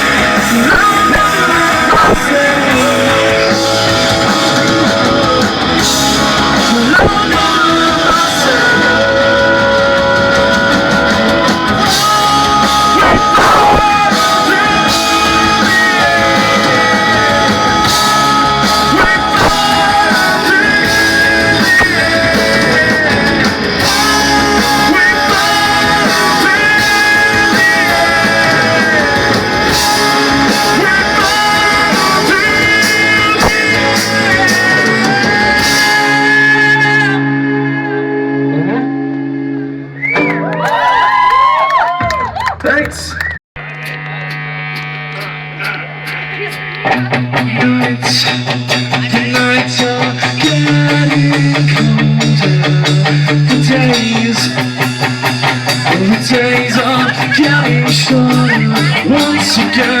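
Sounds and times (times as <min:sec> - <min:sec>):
drums: 0:00.0 - 0:37.6, 0:39.8 - 1:00.0
person singing: 0:00.0 - 0:40.7, 0:45.1 - 1:00.0
electric guitars: 0:00.0 - 1:00.0.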